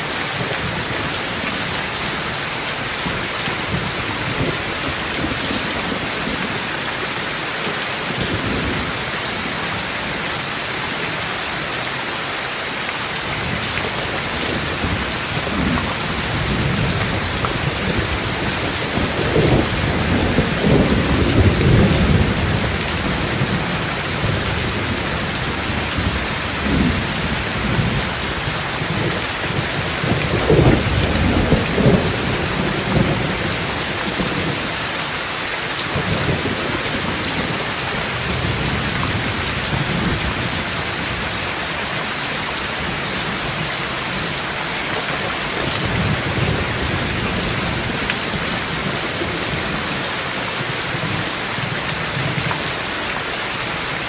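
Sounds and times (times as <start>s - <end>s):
heavy rain falling: 0.0s - 54.0s
rolling thunder: 14.4s - 34.6s.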